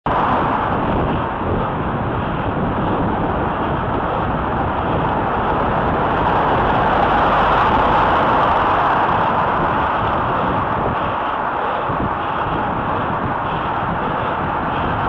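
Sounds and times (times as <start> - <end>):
road and wind noise: 0.0 - 15.0
car running close by: 0.1 - 15.0.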